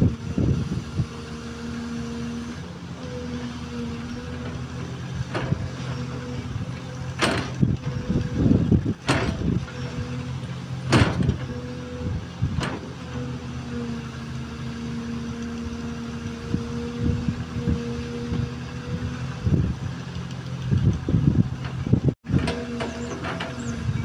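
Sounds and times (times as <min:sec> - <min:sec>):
excavator diesel engine running: 0:00.0 - 0:24.0
sharp machine knocks: 0:07.2 - 0:07.7, 0:09.0 - 0:09.6, 0:10.9 - 0:11.5.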